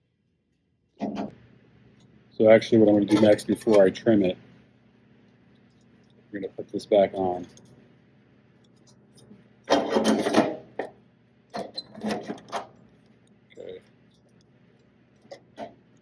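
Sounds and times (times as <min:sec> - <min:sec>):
metal scraping on metal: 0:02.8 - 0:04.0, 0:09.7 - 0:10.9, 0:11.6 - 0:12.8.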